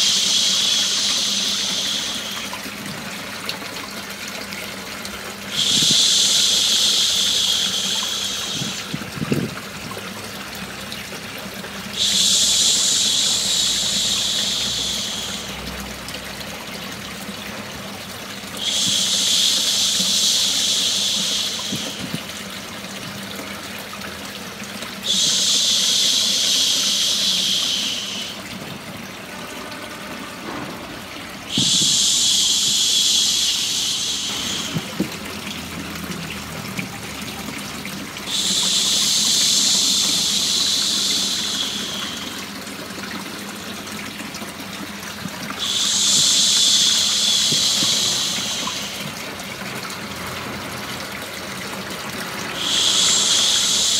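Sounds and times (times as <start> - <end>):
running water white noise: 0.0 - 53.9
person shushing: 31.5 - 35.0.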